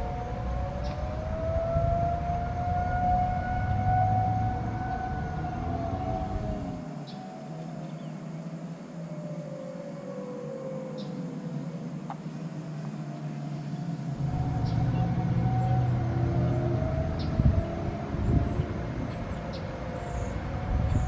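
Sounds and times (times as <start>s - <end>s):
low rumble: 0.0s - 7.0s, 11.2s - 21.0s
warning siren wailing: 0.0s - 21.0s.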